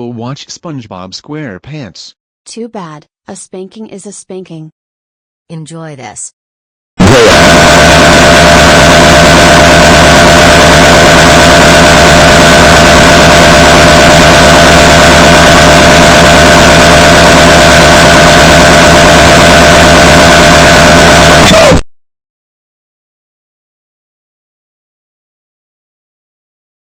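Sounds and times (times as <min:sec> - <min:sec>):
harsh distorted noise with tones: 0:07.0 - 0:21.9.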